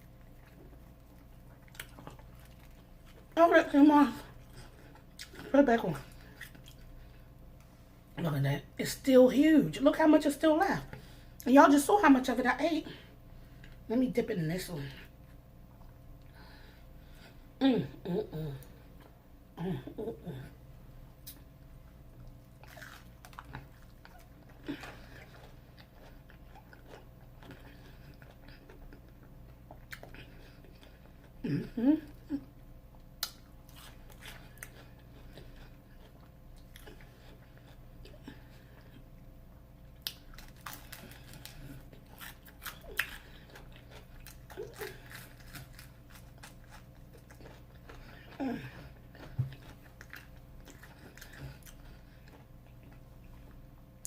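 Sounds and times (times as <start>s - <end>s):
person chewing crunchy food: 0.0s - 3.4s, 4.3s - 7.7s, 22.1s - 31.5s, 32.1s - 39.2s, 39.9s - 53.6s.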